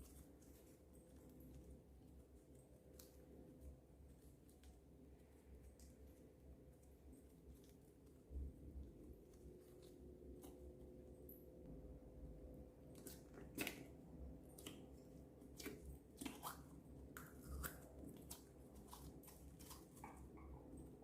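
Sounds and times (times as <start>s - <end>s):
slime squished by hand: 12.9s - 20.4s.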